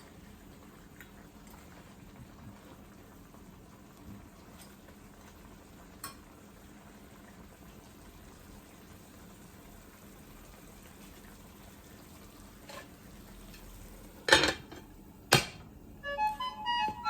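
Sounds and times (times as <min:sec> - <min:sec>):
faint simmering hiss: 0:00.0 - 0:16.9
metal knocks of cooking pot: 0:14.3 - 0:15.7
tune of short stepped notes: 0:16.0 - 0:17.0.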